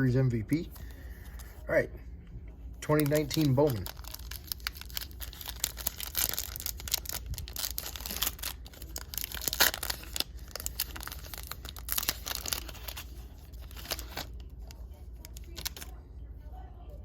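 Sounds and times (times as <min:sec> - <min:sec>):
foil wrapper tearing and crinkling: 0:02.9 - 0:15.9.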